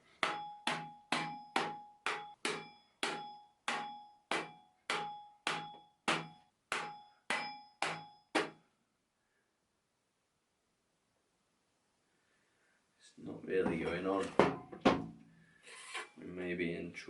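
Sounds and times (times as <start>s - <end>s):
hammer striking plastic pipe: 0.0s - 8.6s, 13.6s - 15.2s.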